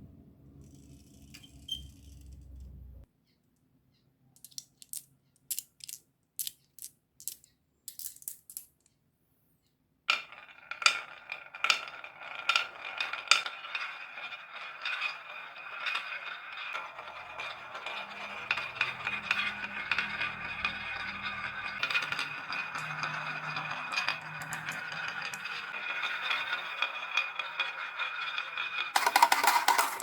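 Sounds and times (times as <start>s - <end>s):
marbles clicking on wooden track: 10.1s - 30.0s
marbles rolling rattle: 10.1s - 30.0s.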